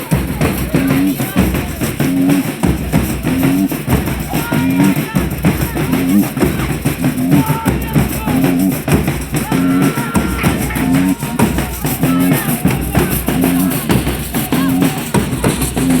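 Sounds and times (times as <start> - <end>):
drums keeping steady beat: 0.0 - 16.0.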